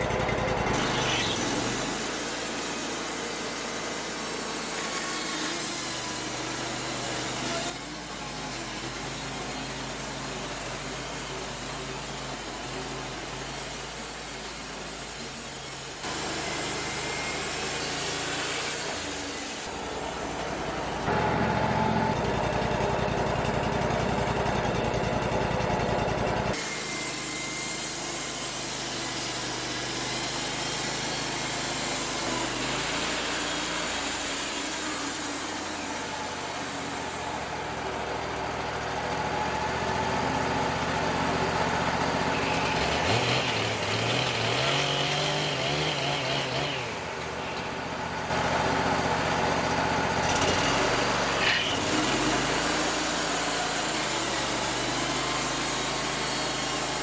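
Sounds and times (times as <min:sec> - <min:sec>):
band sawmill sawing: 0:00.0 - 0:57.0.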